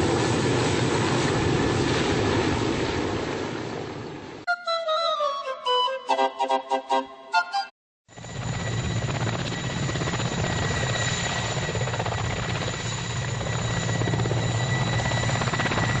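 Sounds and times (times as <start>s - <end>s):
helicopter engine whine: 8.1s - 16.0s.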